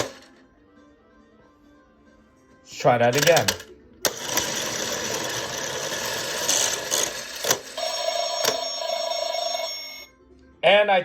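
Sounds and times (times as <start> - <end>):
slot machine reels whirring: 0.0 - 0.3, 3.0 - 9.8
electronic ringing jingle: 7.7 - 10.2.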